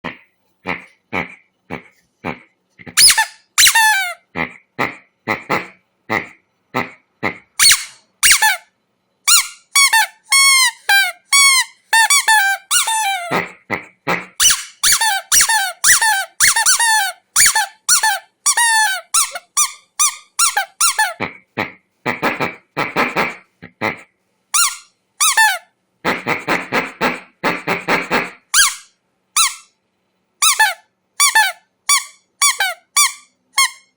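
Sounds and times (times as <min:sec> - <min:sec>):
squeaky rubber dog toy: 0:02.9 - 0:04.5, 0:07.5 - 0:13.6, 0:14.3 - 0:21.2, 0:24.5 - 0:29.8, 0:30.4 - 0:33.9.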